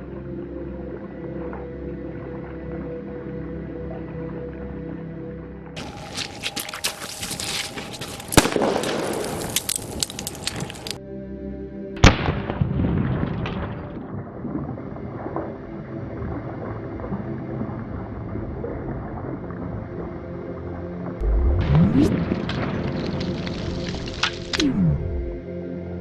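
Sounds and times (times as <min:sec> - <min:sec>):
background music: 0:00.0 - 0:10.3, 0:10.9 - 0:14.5, 0:19.9 - 0:26.0
grenade explosion: 0:21.2 - 0:25.4.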